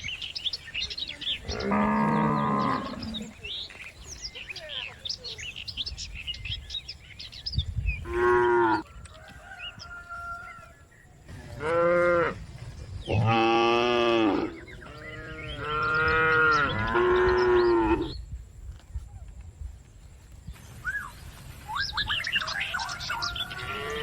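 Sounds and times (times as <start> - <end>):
cows mooing: 1.4 - 3.4, 8.0 - 8.8, 11.5 - 12.4, 13.1 - 18.1, 23.2 - 24.0.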